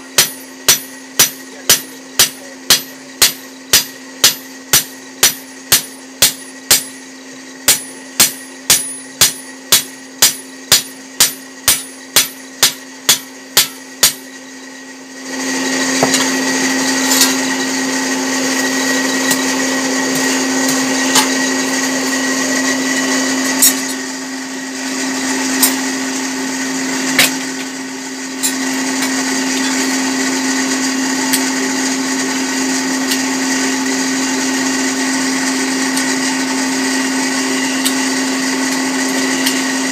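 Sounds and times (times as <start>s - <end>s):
hammer striking metal on anvil: 0.0s - 7.0s, 7.6s - 14.4s, 15.4s - 17.7s, 18.5s - 21.6s, 23.4s - 24.0s, 27.1s - 27.7s
electric grinder whining: 14.4s - 39.9s
electric blower humming: 15.1s - 39.9s.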